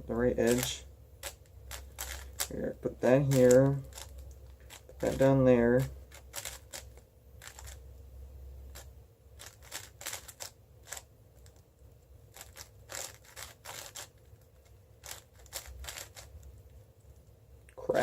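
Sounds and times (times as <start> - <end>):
speed cube plastic clicks: 0.4 - 2.6, 3.2 - 5.2, 6.1 - 7.8, 8.7 - 11.6, 12.3 - 16.6.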